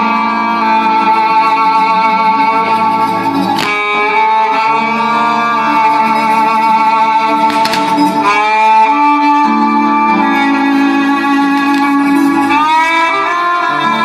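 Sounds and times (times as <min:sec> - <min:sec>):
music with long held notes: 0:00.0 - 0:14.0
sharp crack: 0:07.4 - 0:08.2.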